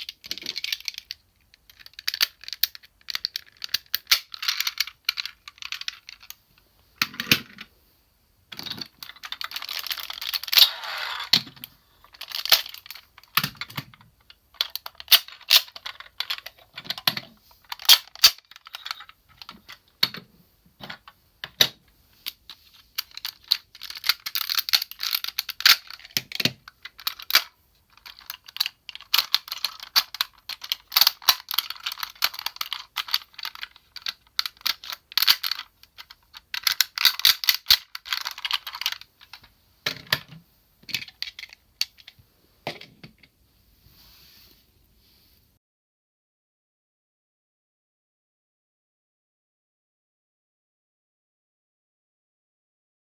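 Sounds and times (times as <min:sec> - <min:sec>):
plastic toy clicks and rattles: 0:00.0 - 0:06.4, 0:08.6 - 0:20.2, 0:23.0 - 0:42.2.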